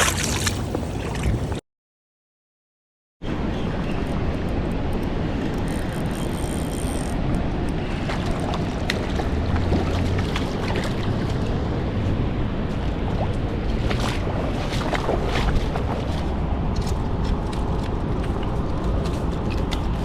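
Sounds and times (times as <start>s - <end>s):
lapping water: 0.0s - 1.6s, 7.9s - 11.7s, 13.0s - 16.4s.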